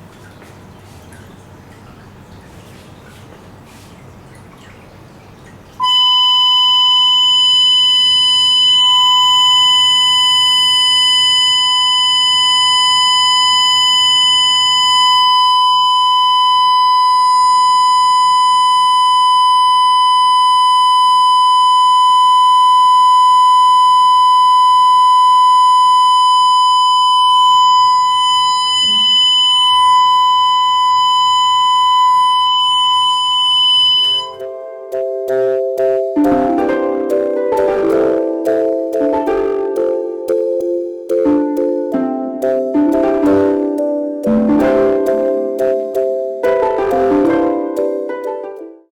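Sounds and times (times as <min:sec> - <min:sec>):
loud electronic test tone: 0:05.8 - 0:41.8.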